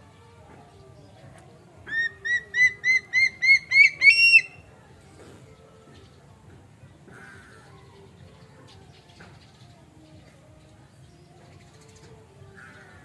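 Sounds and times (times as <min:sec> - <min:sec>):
bird calling clear notes: 0:01.8 - 0:05.4.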